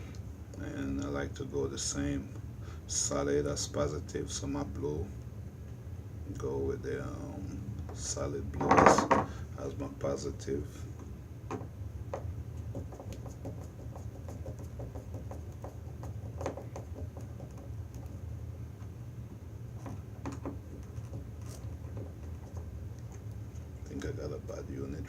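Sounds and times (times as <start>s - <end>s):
steady low hum: 0.0s - 25.0s
small clicks and scratches: 12.2s - 19.0s, 19.8s - 24.1s.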